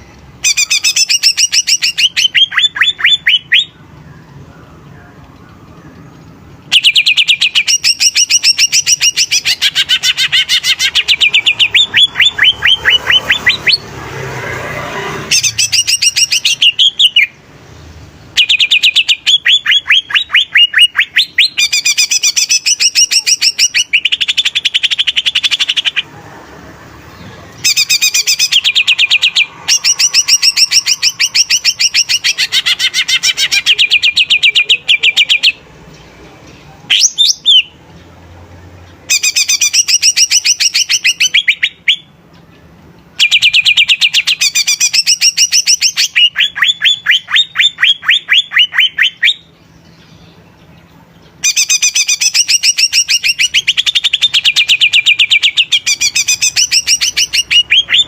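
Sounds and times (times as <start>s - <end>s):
sweeping bird call: 0.0s - 17.4s, 18.4s - 35.6s, 51.3s - 58.0s
bird singing rapid high notes: 0.0s - 17.5s, 18.2s - 26.1s, 27.1s - 35.7s, 36.9s - 37.8s, 38.9s - 42.2s, 43.2s - 50.7s, 51.3s - 58.0s.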